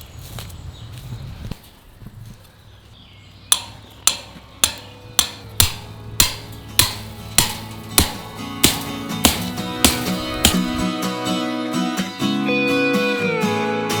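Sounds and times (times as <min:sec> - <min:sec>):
guitar: 0:04.8 - 0:14.0.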